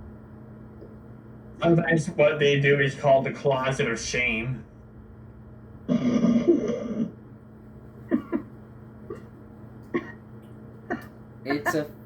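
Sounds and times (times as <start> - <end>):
low steady hum: 0.0 - 12.0
person clearing throat: 5.9 - 7.2, 8.1 - 10.2, 10.9 - 11.1.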